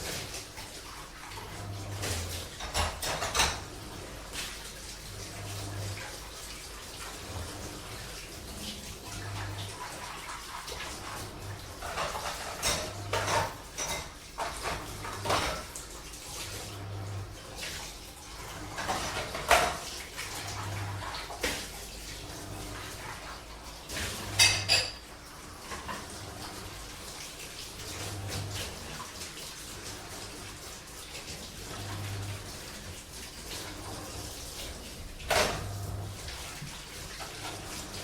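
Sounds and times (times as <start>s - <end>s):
running water: 0.0s - 38.0s
washing machine humming: 0.0s - 38.0s
dishes and cutlery clattering: 2.0s - 3.8s, 11.8s - 15.8s, 18.6s - 20.0s, 23.9s - 26.2s, 35.3s - 37.9s.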